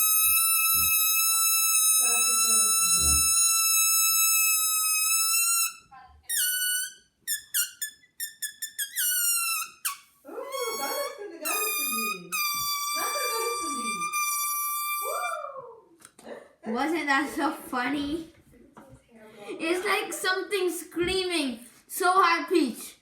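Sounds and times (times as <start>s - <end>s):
balloon neck squealing: 0.0s - 15.4s.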